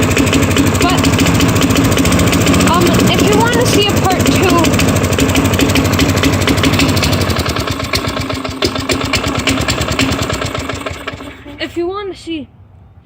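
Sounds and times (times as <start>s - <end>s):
lawn mower engine running: 0.0s - 12.0s.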